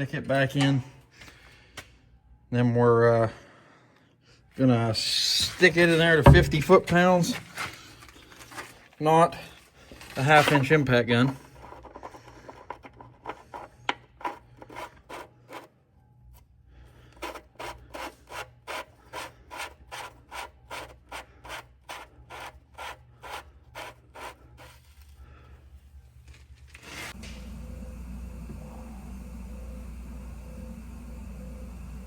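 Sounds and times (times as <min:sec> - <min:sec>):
steady low hum: 0:27.1 - 0:32.0.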